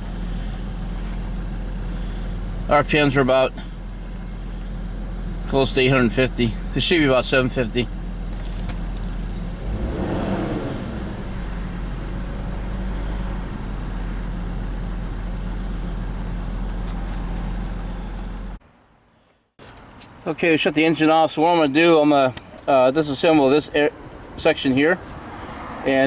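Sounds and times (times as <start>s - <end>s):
car engine idling unsteadily: 0.0s - 18.6s.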